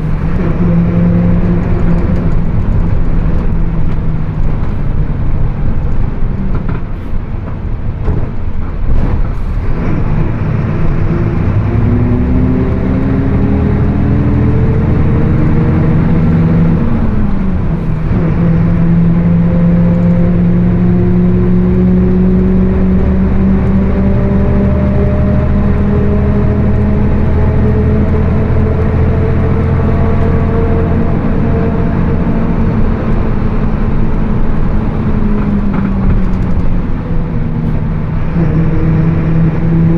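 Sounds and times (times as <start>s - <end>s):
bus differential growling: 0.0s - 39.9s
rising and falling gear whine: 9.7s - 39.9s.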